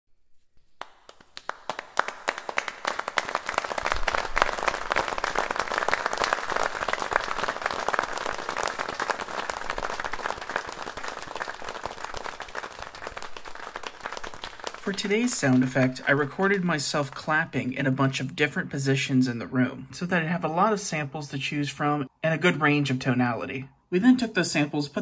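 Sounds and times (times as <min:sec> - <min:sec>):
audience applause: 0:00.8 - 0:17.3.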